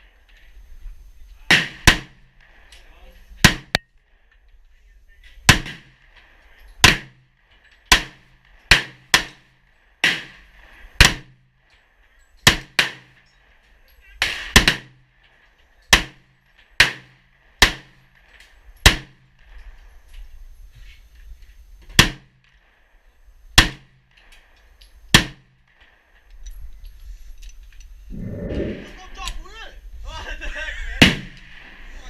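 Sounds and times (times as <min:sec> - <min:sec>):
gunshots: 0:05.5 - 0:06.2, 0:31.0 - 0:31.9.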